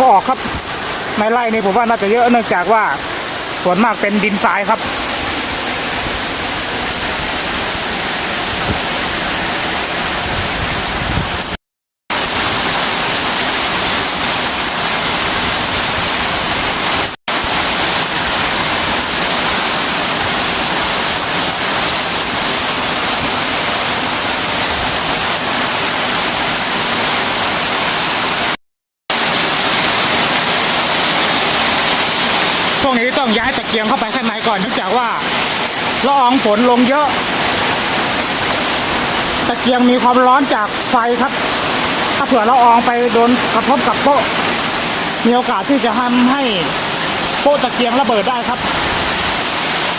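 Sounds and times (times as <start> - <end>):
heavy rain pouring: 0.0 - 49.9.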